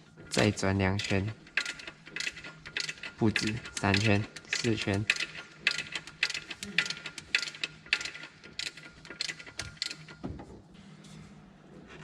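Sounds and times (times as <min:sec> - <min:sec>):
ratchet wrench clicking: 0:01.4 - 0:10.2.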